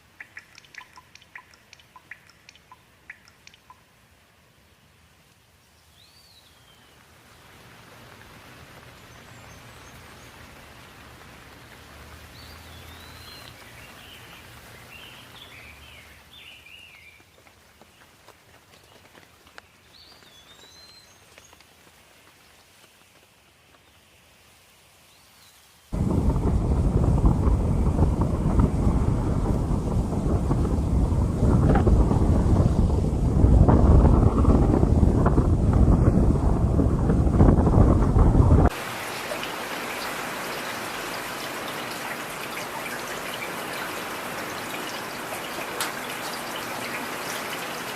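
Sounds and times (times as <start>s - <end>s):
rain falling: 0.0s - 47.9s
bird chirping: 0.1s - 3.8s
low rumble: 26.0s - 38.7s.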